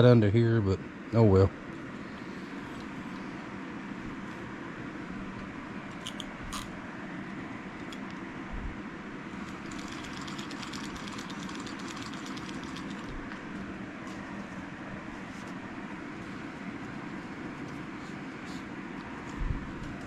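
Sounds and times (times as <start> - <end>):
low background hum: 0.0 - 20.0
fishing reel rapid ticking: 9.6 - 13.1.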